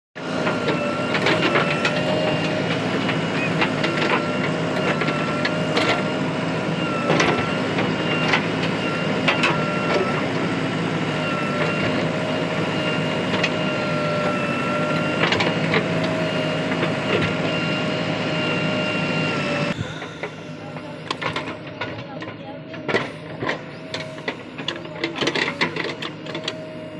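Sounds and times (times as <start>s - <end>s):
backhoe loader running: 0.2s - 26.9s
high whine: 19.3s - 21.6s.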